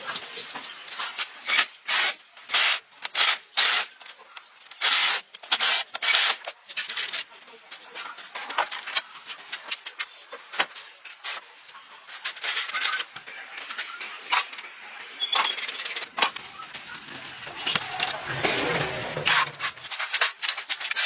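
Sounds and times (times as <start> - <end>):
scraping: 15.4 - 21.0.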